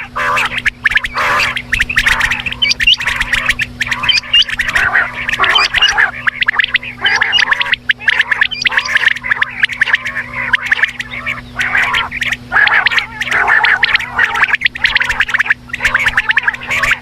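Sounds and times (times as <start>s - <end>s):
quail calling: 0.0s - 17.0s.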